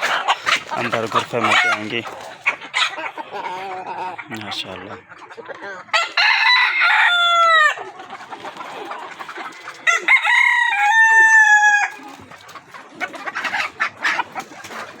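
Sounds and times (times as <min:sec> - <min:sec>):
hens clucking: 0:00.0 - 0:15.0
rooster crowing: 0:06.0 - 0:07.8, 0:09.8 - 0:11.9.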